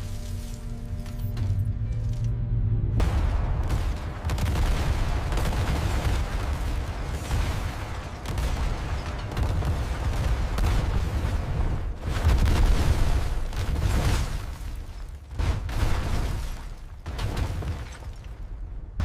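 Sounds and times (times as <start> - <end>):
explosions: 2.9 - 18.0
gunfire: 3.0 - 11.4.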